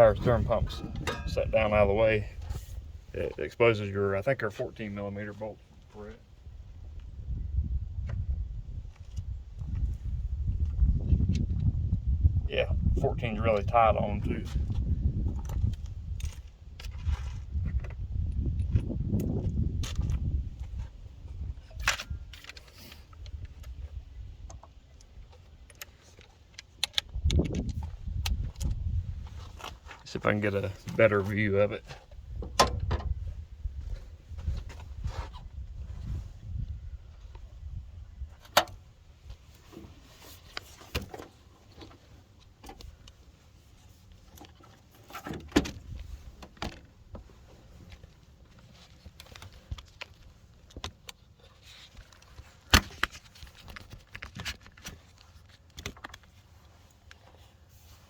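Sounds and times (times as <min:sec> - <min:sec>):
light clicks of handling: 0:21.6 - 0:28.8.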